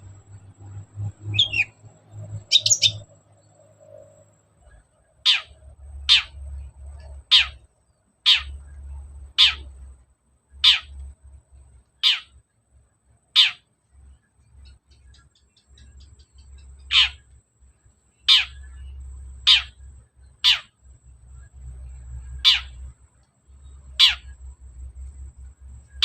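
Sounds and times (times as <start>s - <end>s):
bird harsh screeching calls: 1.3s - 1.8s, 2.4s - 3.1s, 5.2s - 6.4s, 7.2s - 7.6s, 8.2s - 8.6s, 9.4s - 9.7s, 10.6s - 10.9s, 12.0s - 12.3s, 13.4s - 13.6s, 16.9s - 17.2s, 18.3s - 18.7s, 19.4s - 19.8s, 20.4s - 20.8s, 22.4s - 22.8s, 24.0s - 24.4s.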